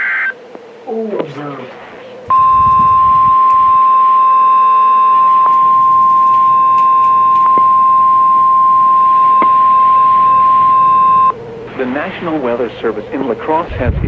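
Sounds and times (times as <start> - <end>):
loud steady high alarm tone: 2.3 - 11.4.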